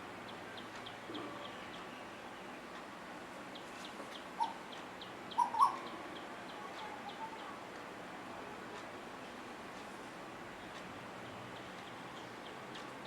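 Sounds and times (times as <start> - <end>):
koel bird calls: 4.2 - 4.6, 5.3 - 5.9.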